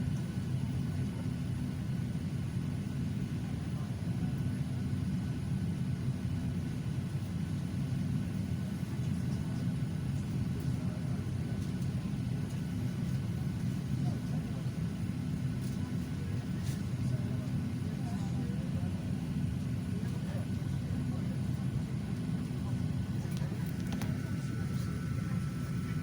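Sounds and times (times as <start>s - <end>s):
airplane low rumble: 0.0s - 26.0s.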